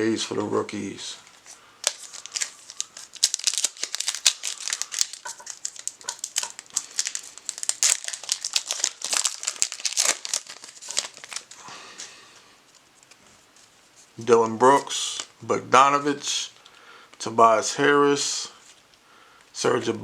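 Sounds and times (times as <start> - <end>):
foil wrapper tearing and crinkling: 1.5 - 11.7.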